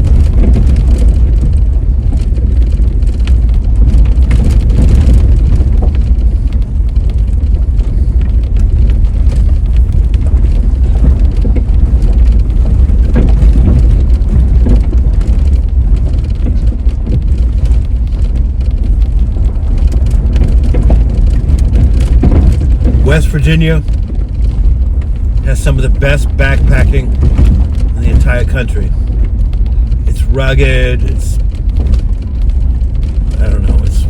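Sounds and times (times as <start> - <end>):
car engine and tyre rumble: 0.0 - 34.0.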